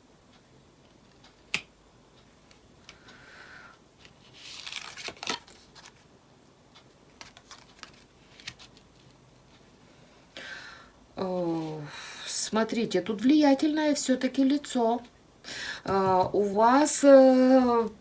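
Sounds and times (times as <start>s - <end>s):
cards sliding: 4.0s - 6.0s, 7.2s - 9.2s.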